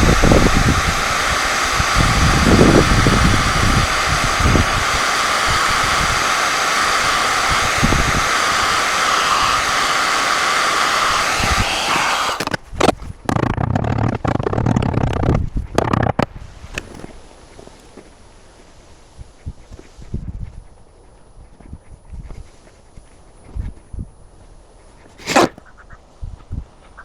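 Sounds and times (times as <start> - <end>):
electric blower whooshing: 0.0 - 12.6, 25.2 - 25.6.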